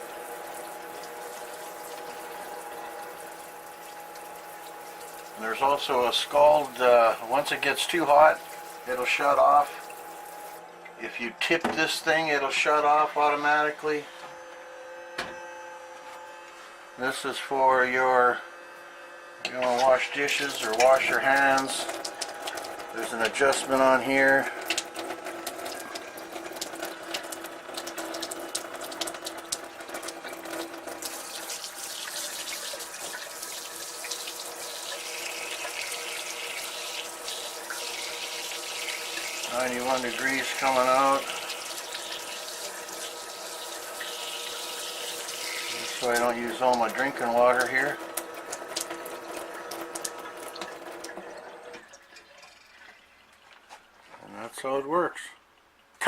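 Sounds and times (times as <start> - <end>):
water flowing from outlet: 0.0 - 13.6, 19.4 - 56.0
clicks and drips: 19.5 - 35.9, 45.5 - 56.0.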